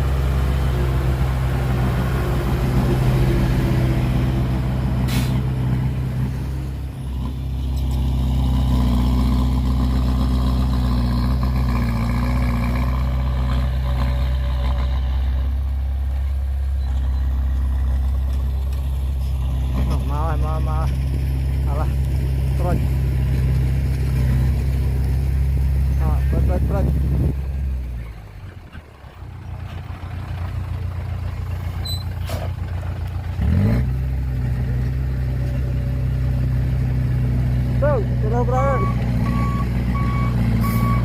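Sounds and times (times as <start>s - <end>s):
heavy diesel engine running: 0.0s - 41.0s
brief hiss: 5.1s - 5.4s.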